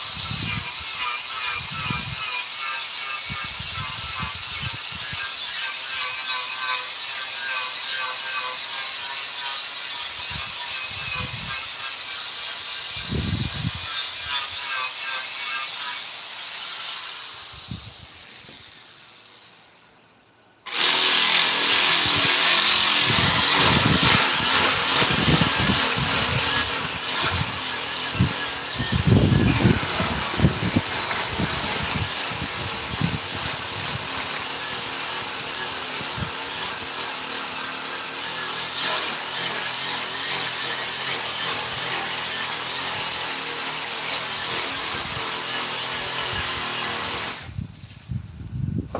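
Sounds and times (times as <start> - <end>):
grinding sanding noise: 0.0 - 19.6, 20.7 - 48.1
power tool machining wood: 20.7 - 47.5.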